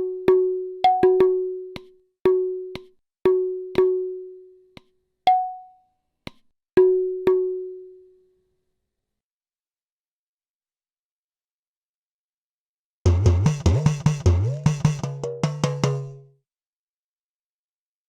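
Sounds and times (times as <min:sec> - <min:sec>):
pitched hand percussion strikes: 0:00.0 - 0:04.2, 0:04.8 - 0:05.6, 0:13.1 - 0:16.3.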